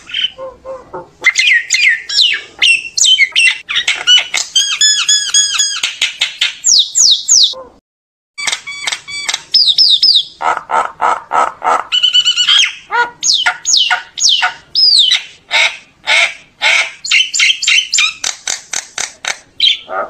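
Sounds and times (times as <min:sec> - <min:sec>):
bird singing whistles and squawks: 0:01.2 - 0:07.6, 0:08.4 - 0:10.4, 0:12.0 - 0:15.3, 0:16.7 - 0:18.3, 0:19.6 - 0:19.9.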